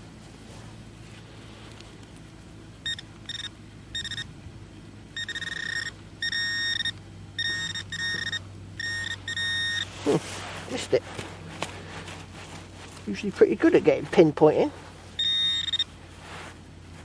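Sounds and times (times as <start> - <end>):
metal detector beeping: 2.8 - 4.3, 5.2 - 10.2, 15.2 - 16.0.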